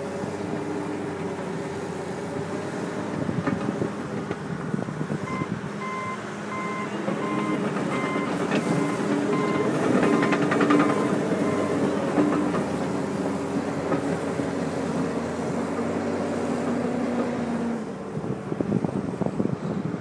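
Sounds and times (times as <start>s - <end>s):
bulldozer diesel engine running: 0.0s - 20.0s
backup alarm beeping: 5.3s - 10.4s
knocks and clanks: 7.0s - 12.8s.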